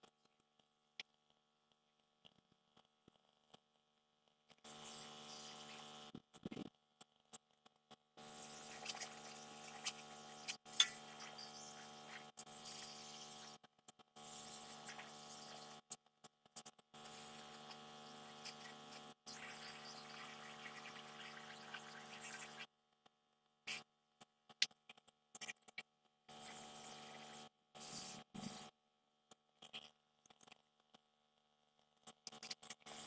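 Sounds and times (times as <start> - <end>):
small electric motor humming: 8.3 - 13.6, 14.2 - 15.8, 17.0 - 22.7.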